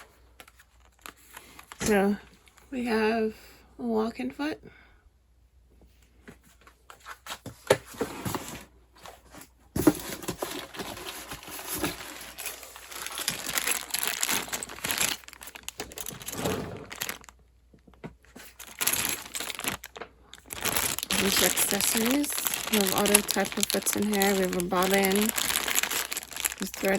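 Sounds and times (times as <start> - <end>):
packaging crinkling and rustling: 0.0 - 2.7, 6.9 - 26.9
packaging handling clicks: 9.9 - 17.3, 18.4 - 26.9.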